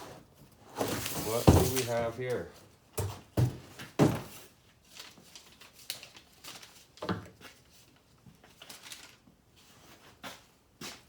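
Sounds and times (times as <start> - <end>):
packaging rustling: 0.8 - 2.1, 8.5 - 9.2
box knocks: 1.2 - 1.9.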